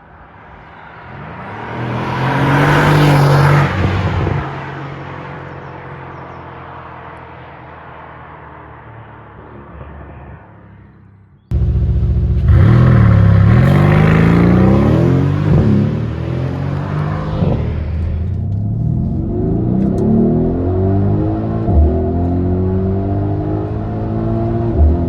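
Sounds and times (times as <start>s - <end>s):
car engine accelerating hard: 11.5s - 25.0s.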